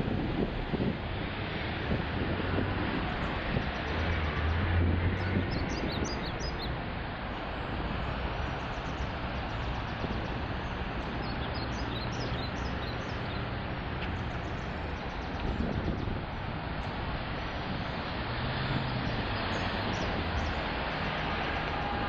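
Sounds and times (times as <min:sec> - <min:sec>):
city traffic noise: 0:00.0 - 0:22.0.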